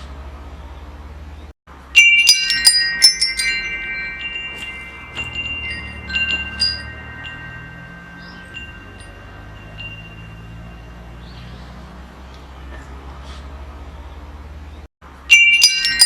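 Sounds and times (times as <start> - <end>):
metal wind chimes ringing: 1.8 - 12.0, 15.2 - 16.0.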